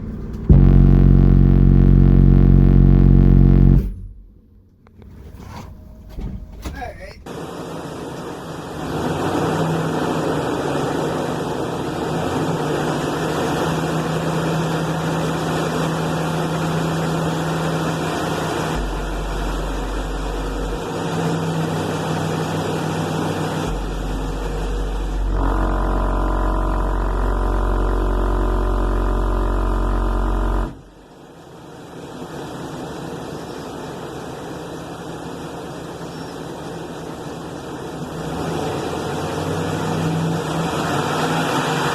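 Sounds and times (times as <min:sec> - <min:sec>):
subwoofer playing low bass tones: 0:00.0 - 0:05.2, 0:13.0 - 0:31.1
loud wash of noise: 0:07.3 - 0:27.0, 0:31.0 - 0:41.9.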